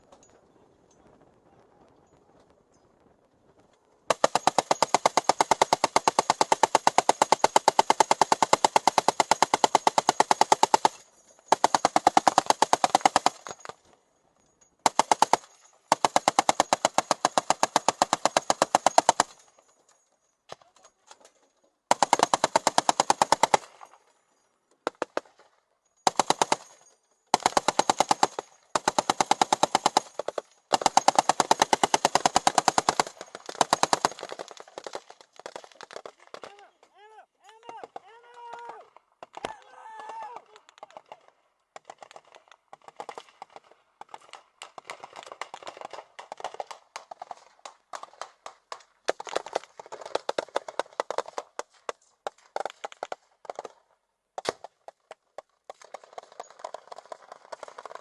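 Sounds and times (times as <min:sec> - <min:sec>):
machine gun firing bursts: 0:04.1 - 0:13.7, 0:14.8 - 0:19.6, 0:21.9 - 0:24.0, 0:26.0 - 0:36.5, 0:41.8 - 0:51.6, 0:56.0 - 0:58.0.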